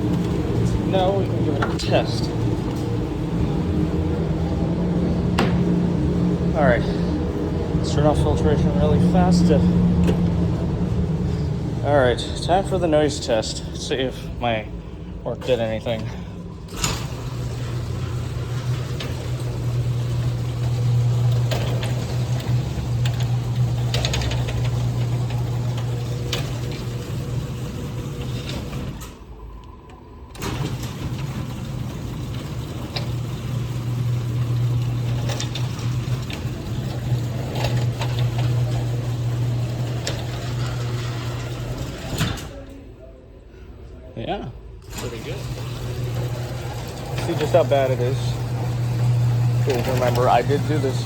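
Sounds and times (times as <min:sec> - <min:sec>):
garage door motor humming: 0:00.0 - 0:43.0, 0:44.8 - 0:51.0
door rattling and clicking: 0:16.7 - 0:29.1, 0:30.4 - 0:42.7, 0:44.9 - 0:51.0.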